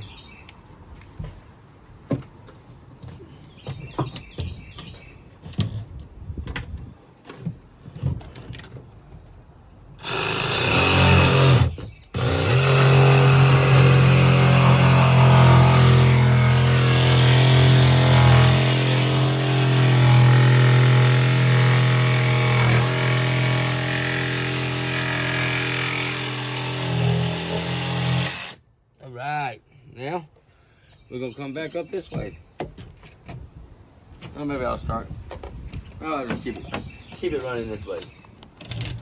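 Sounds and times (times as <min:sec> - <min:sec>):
birds chirping: 0:00.0 - 0:00.6, 0:03.0 - 0:05.9, 0:08.6 - 0:28.4, 0:30.0 - 0:33.2, 0:35.9 - 0:38.8
jigsaw cutting: 0:10.0 - 0:28.6.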